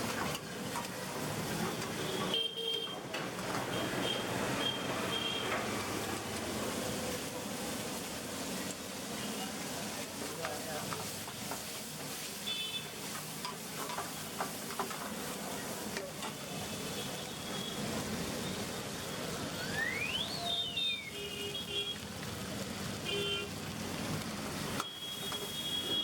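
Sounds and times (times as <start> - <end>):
food sizzling in a pan: 3.6 - 26.0
rising and falling whistle: 19.6 - 21.1.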